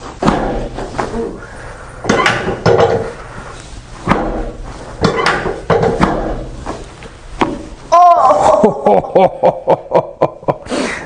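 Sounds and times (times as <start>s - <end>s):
thumps of adjusting thrusts: 2.0s - 3.1s, 4.0s - 6.4s.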